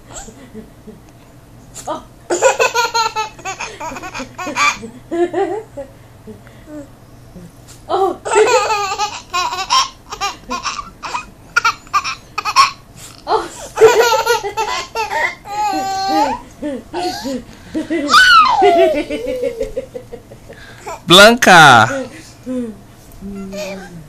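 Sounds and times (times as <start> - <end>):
person laughing heartily: 15.7 - 20.8.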